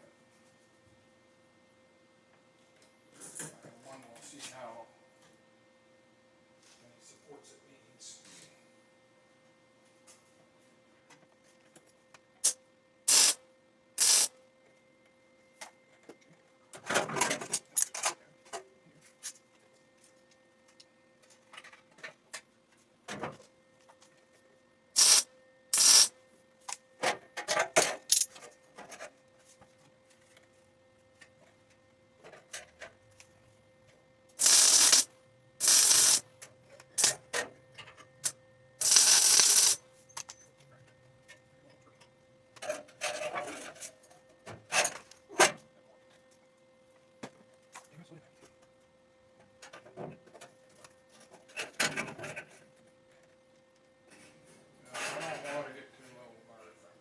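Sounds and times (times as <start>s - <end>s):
electric welder bursts: 12.4s - 13.4s, 14.0s - 14.3s, 25.0s - 26.1s, 34.4s - 36.2s, 38.8s - 39.8s.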